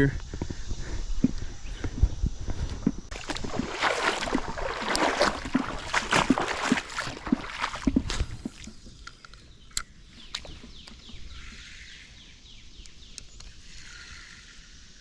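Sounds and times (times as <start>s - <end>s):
creek water sloshing and splashing: 3.1s - 9.0s.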